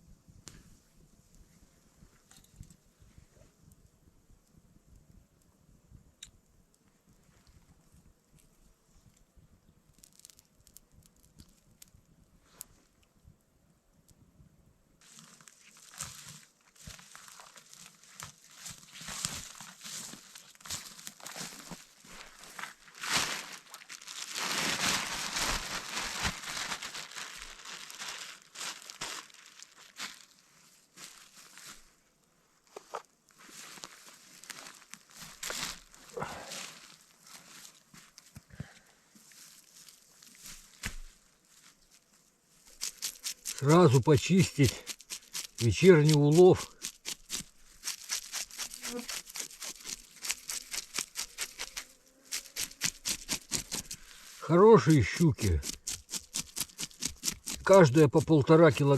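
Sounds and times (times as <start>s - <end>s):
crinkling and rustling: 15.0s - 30.4s, 32.7s - 54.4s
knife scraping fish: 46.6s - 54.0s.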